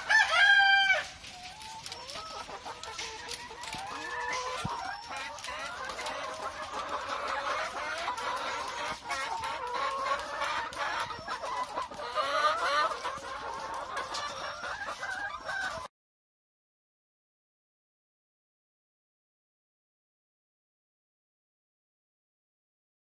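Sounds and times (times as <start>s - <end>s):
hens clucking: 0.0s - 15.9s.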